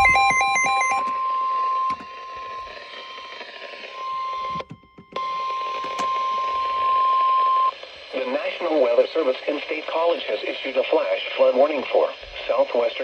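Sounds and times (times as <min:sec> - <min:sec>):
steady alarm tone: 0:00.0 - 0:07.8
static hiss: 0:06.4 - 0:13.0.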